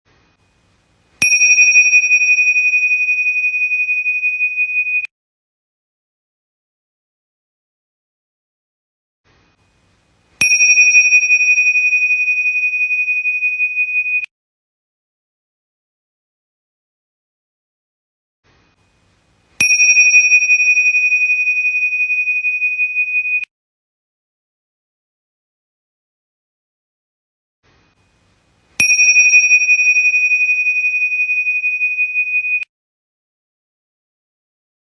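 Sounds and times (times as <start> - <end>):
small bell ringing: 1.2 - 5.1, 10.4 - 14.3, 19.6 - 23.4, 28.8 - 32.7.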